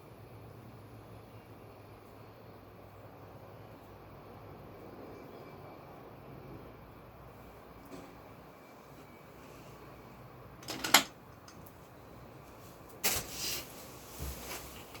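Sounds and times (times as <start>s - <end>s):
clattering knocks: 10.6s - 11.2s.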